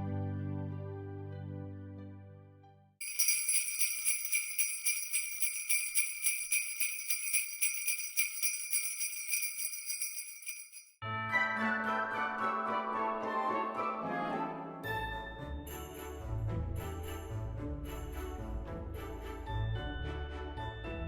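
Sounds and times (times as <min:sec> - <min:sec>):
music: 0:00.0 - 0:08.7, 0:11.0 - 0:21.0
jingle bells shaken: 0:03.0 - 0:11.0.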